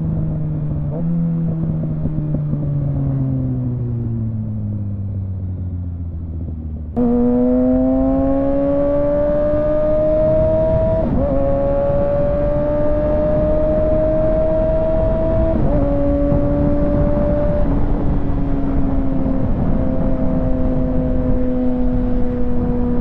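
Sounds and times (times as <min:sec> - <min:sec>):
motorcycle engine revving: 0:06.2 - 0:23.0.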